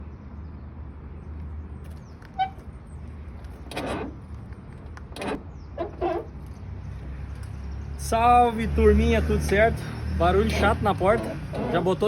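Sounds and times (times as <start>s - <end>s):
car door creaking: 3.6s - 4.3s, 5.1s - 6.4s, 10.4s - 12.0s.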